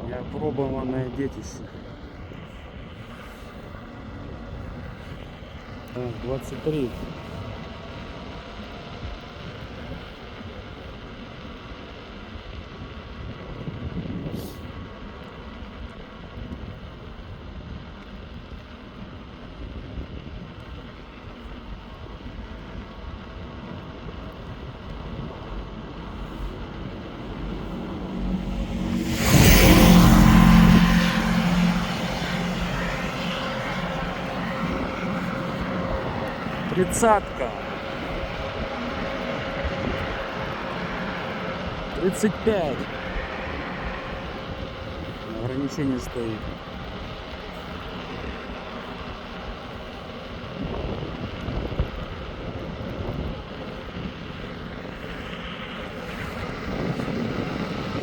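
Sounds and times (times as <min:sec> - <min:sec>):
road noise: 0:00.0 - 0:12.7, 0:20.6 - 0:58.0
rushing wind: 0:19.3 - 0:58.0
steady low hum: 0:21.8 - 0:50.1.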